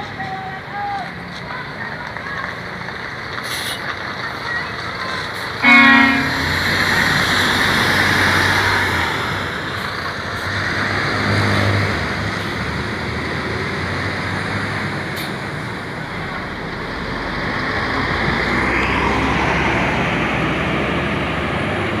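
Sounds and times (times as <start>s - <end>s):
tyre and road noise: 0.0s - 22.0s
large vehicle engine passing: 5.4s - 22.0s.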